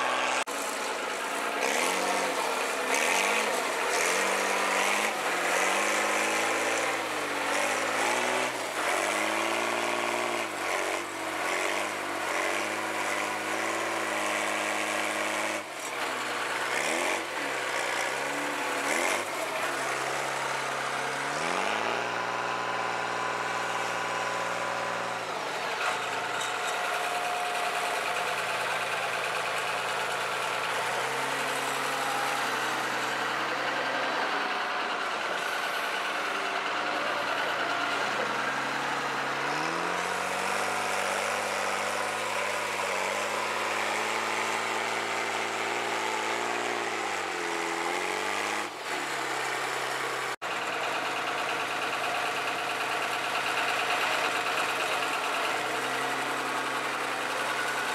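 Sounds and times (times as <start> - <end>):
diesel engine revving: 0.0 - 57.9.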